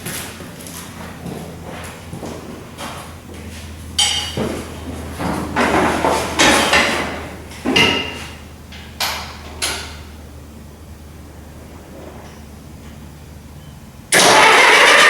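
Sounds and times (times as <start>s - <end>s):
scuffing and scraping: 0.0s - 8.5s
metallic clanks and knocks: 4.0s - 10.1s.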